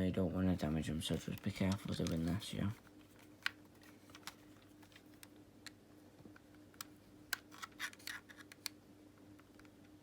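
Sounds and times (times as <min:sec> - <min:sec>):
faint steady hum: 0:00.0 - 0:10.0
plastic clicks and scrapes: 0:06.8 - 0:08.8.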